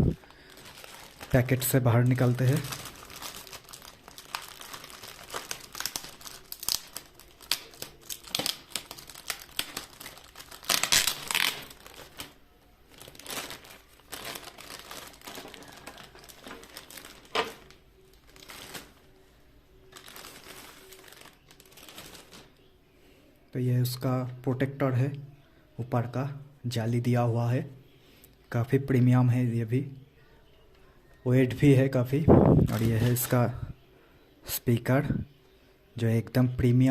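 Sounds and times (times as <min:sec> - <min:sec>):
plastic packaging crinkling: 0:00.0 - 0:22.7, 0:32.5 - 0:33.6.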